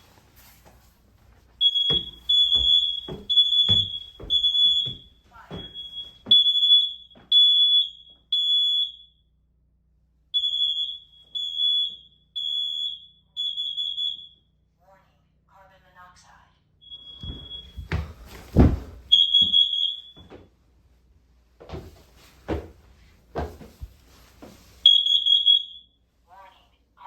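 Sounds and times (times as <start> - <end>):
alarm beeping high-pitched: 1.6 - 9.2, 10.4 - 14.4, 16.8 - 17.9, 19.1 - 20.2, 24.9 - 25.9.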